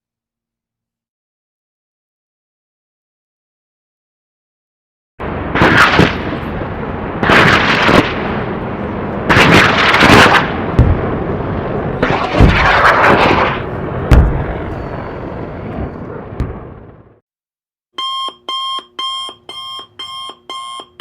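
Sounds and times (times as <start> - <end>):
echoing rumble: 5.2 - 17.2
gunfire bursts: 5.5 - 6.4, 7.2 - 8.4, 9.3 - 11.0, 12.0 - 14.5
sharp gunshot crack: 5.5 - 6.5, 7.2 - 8.4, 9.3 - 11.0, 12.0 - 14.6.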